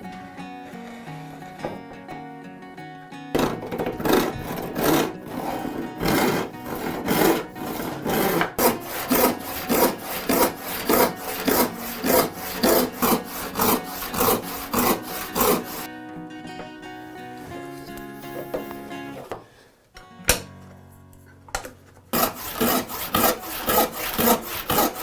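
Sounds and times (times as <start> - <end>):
hand tool stroking wood: 3.4 - 15.9, 22.1 - 25.0.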